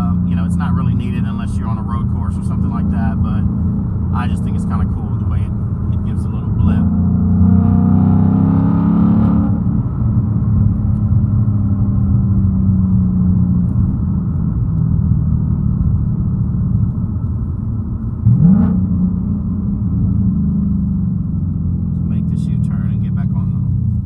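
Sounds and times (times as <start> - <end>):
engine revving: 0.0 - 10.0, 18.2 - 20.9
car engine running: 0.0 - 24.0.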